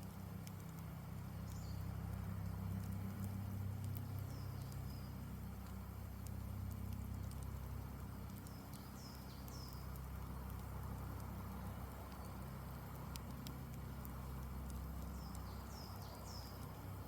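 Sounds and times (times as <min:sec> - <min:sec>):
campfire crackling: 0:00.0 - 0:17.0
birds chirping: 0:08.4 - 0:10.0, 0:15.0 - 0:16.8.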